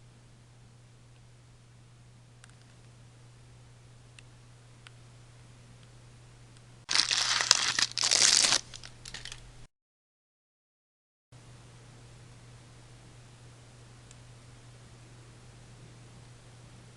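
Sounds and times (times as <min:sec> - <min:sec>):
loud crinkling and rustling: 0:06.9 - 0:09.4.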